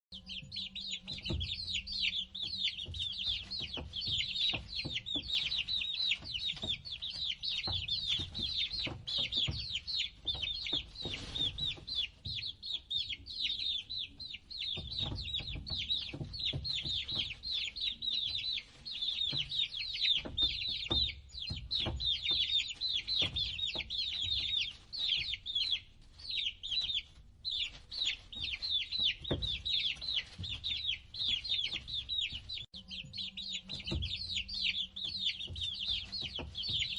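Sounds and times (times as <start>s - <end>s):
chicks peeping: 0.1s - 36.9s.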